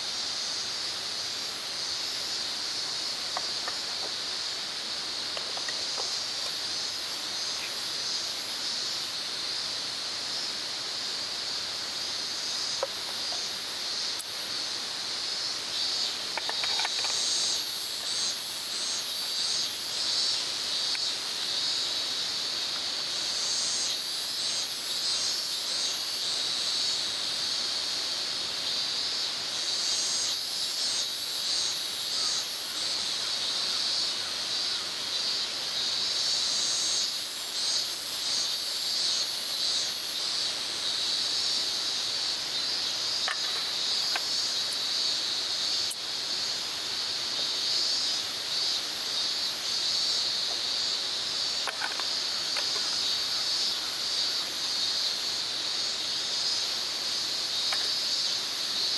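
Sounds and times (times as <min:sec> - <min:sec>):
shrill insect chorus: 0:00.0 - 0:58.9.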